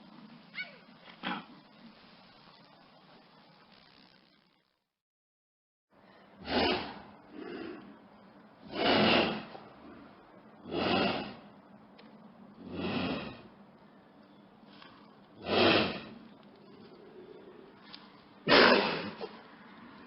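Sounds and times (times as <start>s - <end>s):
creature heavy breathy snorts: 10.7s - 11.5s.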